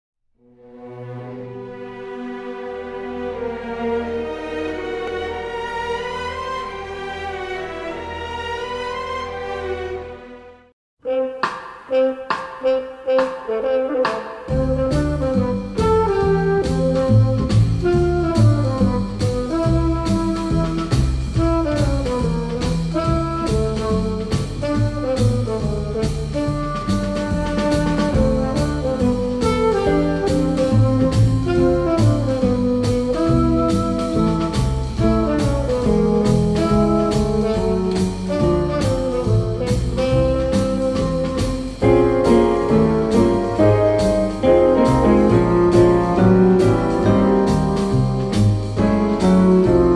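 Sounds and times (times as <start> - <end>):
saxophone: 11.0 - 49.9
drum kit beat: 11.1 - 49.9
walking bass: 14.5 - 49.9.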